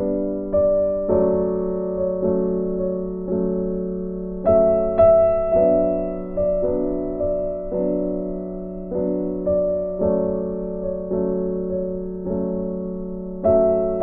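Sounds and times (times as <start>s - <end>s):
slow soft piano: 0.0s - 14.0s.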